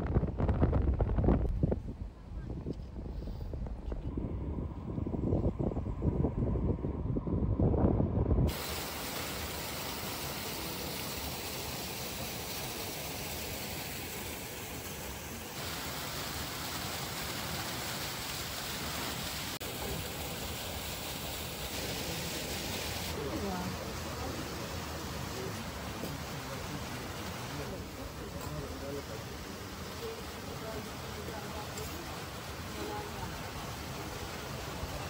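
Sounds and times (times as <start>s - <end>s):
wind buffeting microphone: 0.0s - 8.7s
steady hiss: 8.5s - 35.0s.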